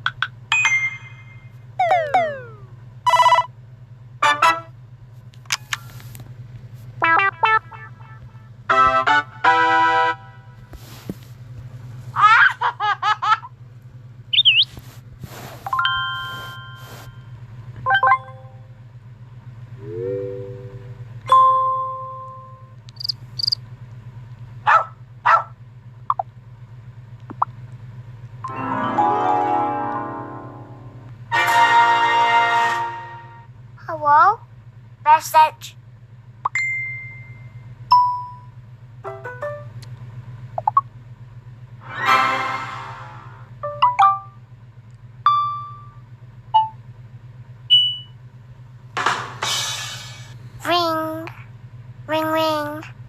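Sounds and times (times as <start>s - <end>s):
steady low hum: 0.0s - 28.5s, 32.9s - 53.0s
short blips: 1.8s - 3.4s, 14.3s - 14.8s, 22.9s - 23.6s, 26.1s - 26.3s.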